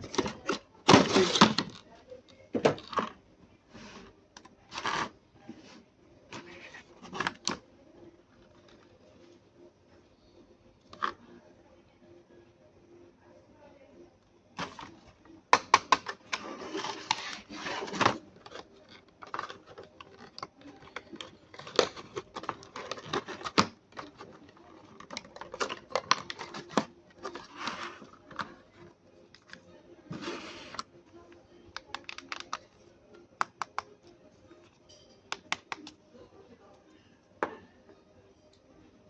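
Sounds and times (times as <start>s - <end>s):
clicks and taps: 35.3s - 36.0s.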